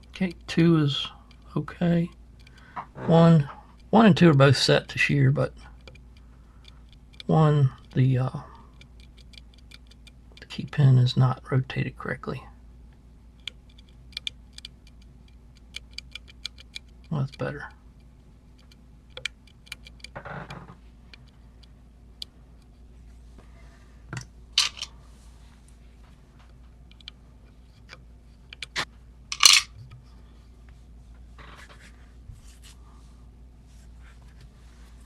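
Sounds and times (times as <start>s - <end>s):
lock-picking tools clicking: 8.7s - 10.5s, 13.4s - 17.4s, 18.0s - 20.2s.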